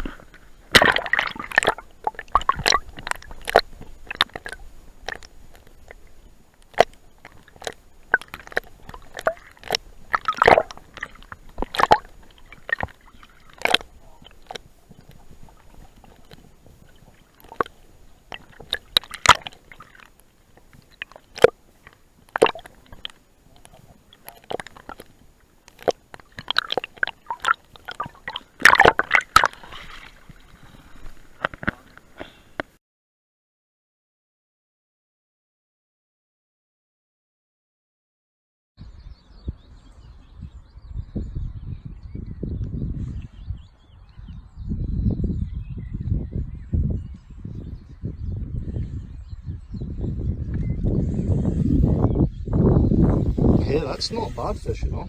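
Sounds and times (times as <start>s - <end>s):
water sloshing and splashing: 0.0s - 32.8s.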